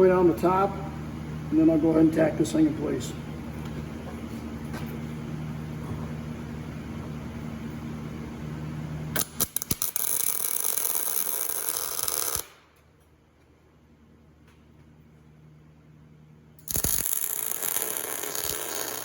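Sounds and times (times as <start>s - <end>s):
steady low hum: 0.0s - 19.0s
welding arc crackling: 9.2s - 12.6s, 16.6s - 19.0s.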